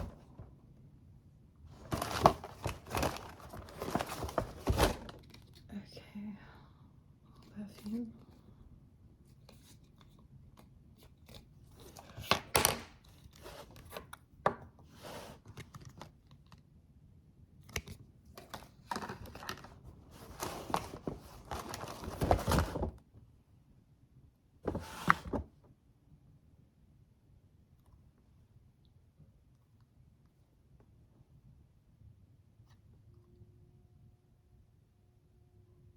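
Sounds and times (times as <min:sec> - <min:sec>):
paper and cardboard rustling: 0:01.7 - 0:05.6, 0:11.2 - 0:14.1, 0:18.4 - 0:23.0, 0:24.7 - 0:25.5.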